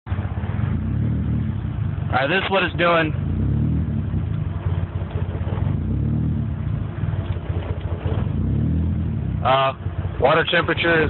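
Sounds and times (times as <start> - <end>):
car engine idling roughly: 4.1 - 8.4, 9.0 - 11.0.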